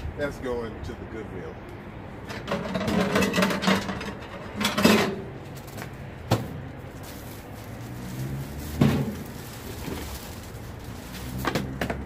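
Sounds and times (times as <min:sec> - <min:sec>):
rustling and shuffling: 0:04.1 - 0:12.0.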